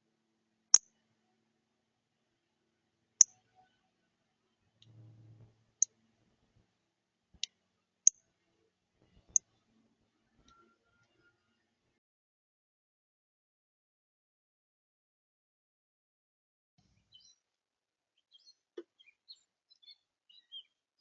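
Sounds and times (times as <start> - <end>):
short low rumble: 4.8 - 5.7.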